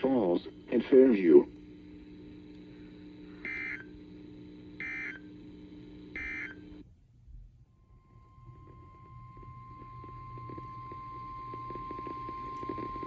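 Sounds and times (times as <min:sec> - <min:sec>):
low receiver hum: 0:00.0 - 0:13.0
buzzy data bursts: 0:03.2 - 0:06.8.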